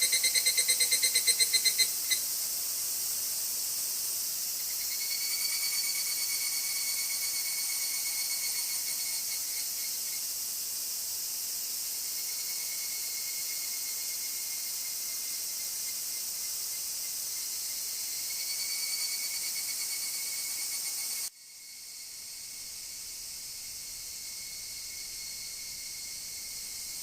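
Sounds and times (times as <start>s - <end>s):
cicadas buzzing: 0.0s - 27.0s.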